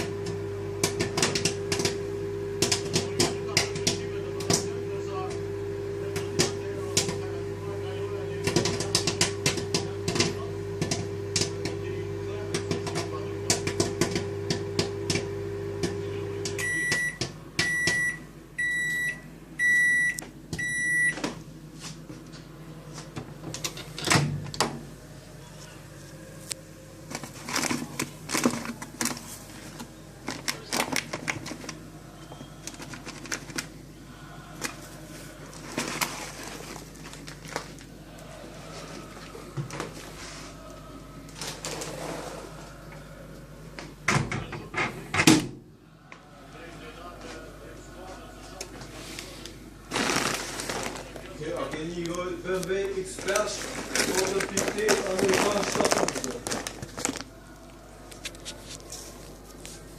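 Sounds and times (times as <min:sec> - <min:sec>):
popcorn popping: 0:00.0 - 0:05.5, 0:06.1 - 0:07.4, 0:08.3 - 0:18.2, 0:27.1 - 0:31.8, 0:32.6 - 0:33.8, 0:49.9 - 0:51.3, 0:52.0 - 0:57.3
microwave humming: 0:00.0 - 0:59.9.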